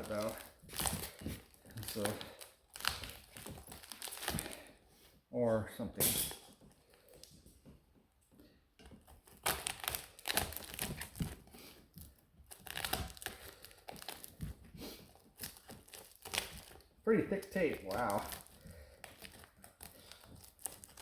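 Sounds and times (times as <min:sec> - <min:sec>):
packing tape and plastic tearing: 0:00.0 - 0:04.8, 0:09.0 - 0:21.0.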